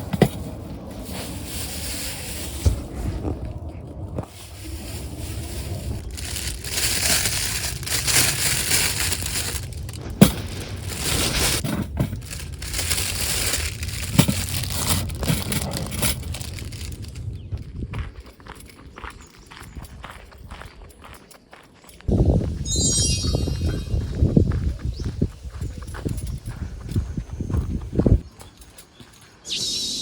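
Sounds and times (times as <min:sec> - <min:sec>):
rustling and crunching: 0:00.0 - 0:18.9.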